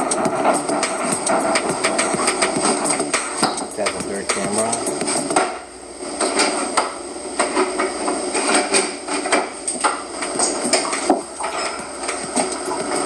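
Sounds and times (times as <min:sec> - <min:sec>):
dishes and utensils clinking: 0:10.4 - 0:13.0.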